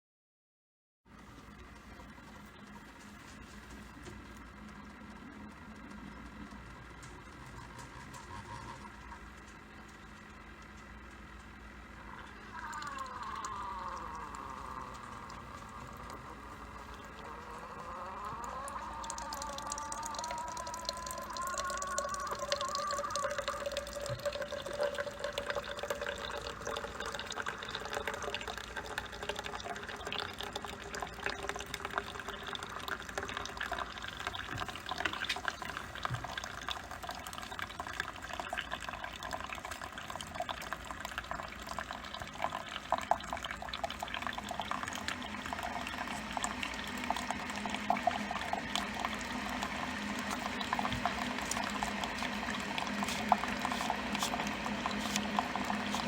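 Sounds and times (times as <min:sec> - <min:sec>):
small crackles and pops: 0:01.2 - 0:25.0
water bubbling and hissing: 0:44.0 - 0:56.0.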